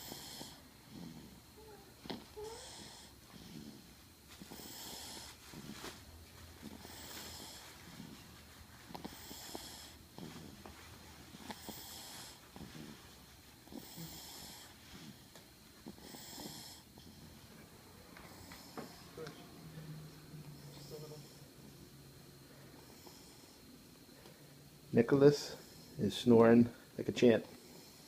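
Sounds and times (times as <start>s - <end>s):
person snoring: 0.0s - 3.9s, 9.0s - 10.6s, 11.5s - 13.0s, 13.6s - 15.2s, 15.9s - 17.3s
small clicks and snuffles: 6.6s - 17.3s.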